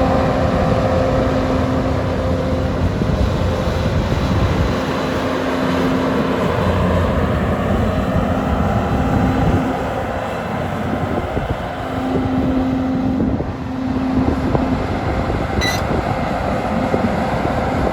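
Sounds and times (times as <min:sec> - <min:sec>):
excavator engine and hydraulics: 0:00.0 - 0:17.9
high squeak: 0:15.6 - 0:15.9.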